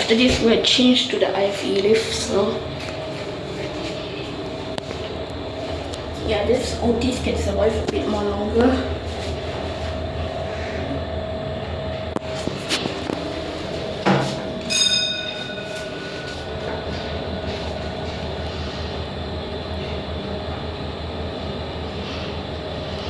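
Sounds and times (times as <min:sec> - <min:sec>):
lift running hum: 0:00.0 - 0:23.0
brief ringing tone: 0:14.6 - 0:17.6.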